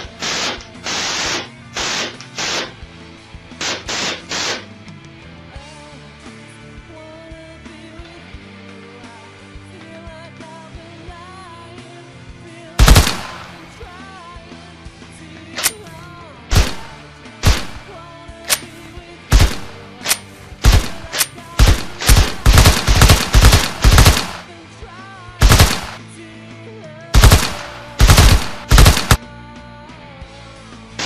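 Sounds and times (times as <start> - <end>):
background music: 0.0 - 31.0
video game gunshot effects: 12.8 - 13.6, 16.5 - 17.8, 19.3 - 24.5, 25.4 - 26.0, 27.2 - 29.2.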